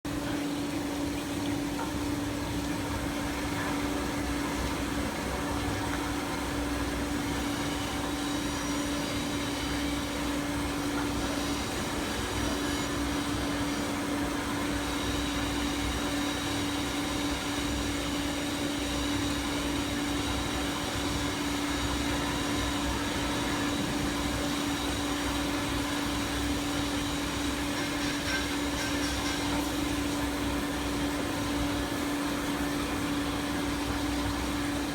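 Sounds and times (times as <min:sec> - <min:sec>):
band saw machine humming: 0:03.1 - 0:34.9
thin high whine: 0:18.7 - 0:30.2.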